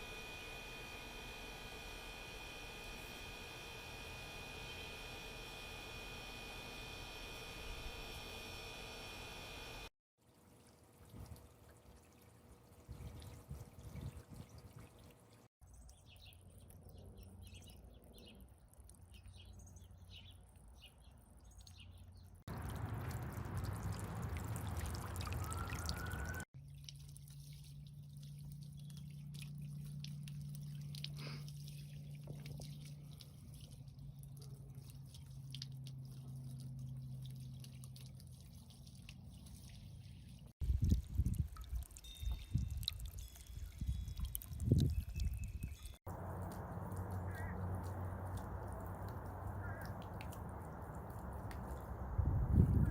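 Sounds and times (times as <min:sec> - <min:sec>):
steady low hum: 0:00.0 - 0:09.9, 0:46.0 - 0:52.9
fountain water splashing and trickling: 0:10.2 - 0:52.3.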